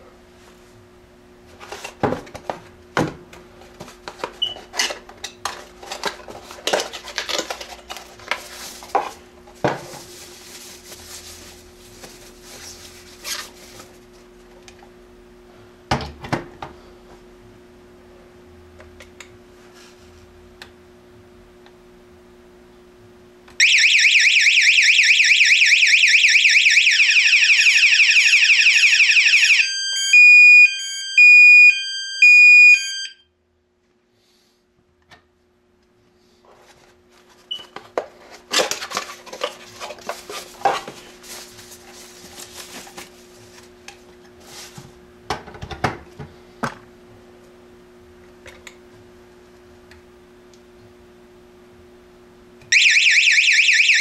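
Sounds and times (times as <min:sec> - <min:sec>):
warbling electronic alarm siren: 0:23.6 - 0:33.3, 0:52.7 - 0:54.0
loud beeps: 0:27.6 - 0:33.2.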